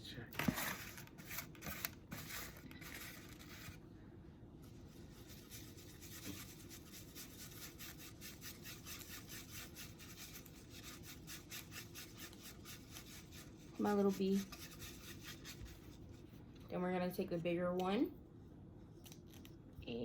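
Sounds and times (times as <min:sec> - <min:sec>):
faint rubbing strokes on surface: 0:04.6 - 0:16.6.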